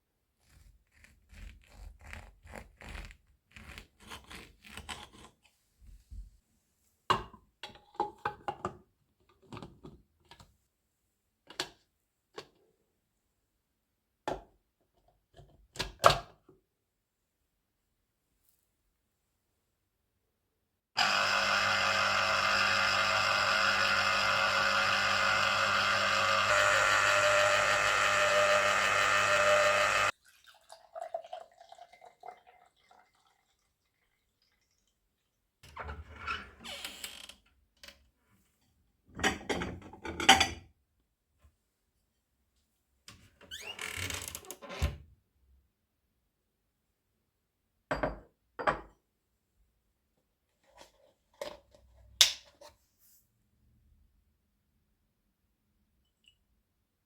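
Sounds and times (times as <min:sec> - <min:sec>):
kitchen appliance motor humming: 0:21.0 - 0:30.1.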